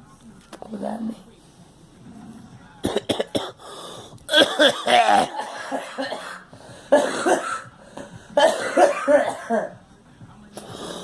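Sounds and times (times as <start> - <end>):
girl coughing: 2.8 - 3.6, 4.3 - 7.7, 8.4 - 9.8.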